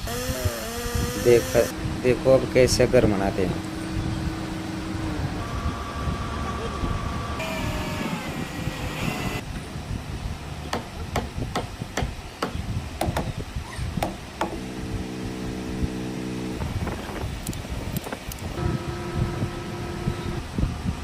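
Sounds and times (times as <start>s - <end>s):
humming tone: 3.6s - 9.4s, 18.5s - 20.6s
hammering on wood: 10.7s - 13.3s, 14.0s - 14.6s.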